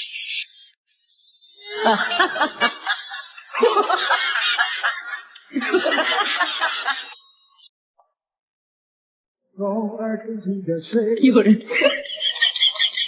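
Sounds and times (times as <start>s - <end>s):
person laughing: 1.7s - 7.2s, 11.7s - 13.0s.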